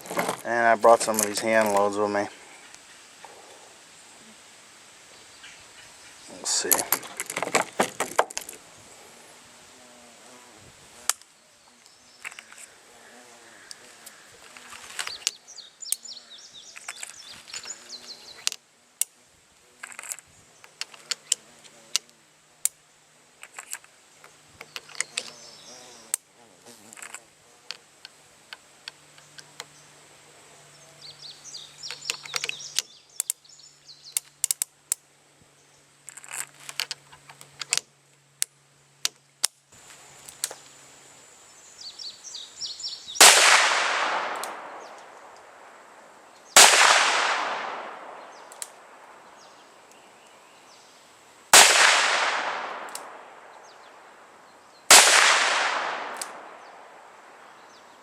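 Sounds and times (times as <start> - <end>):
loud revolver shots with echo: 43.2 - 45.0, 46.6 - 48.2, 51.6 - 53.4, 54.9 - 56.6.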